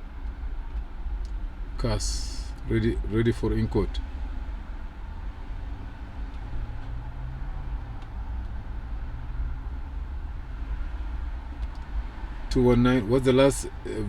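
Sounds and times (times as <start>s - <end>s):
faint hum: 0.0s - 6.3s
steady low rumble: 0.0s - 14.0s.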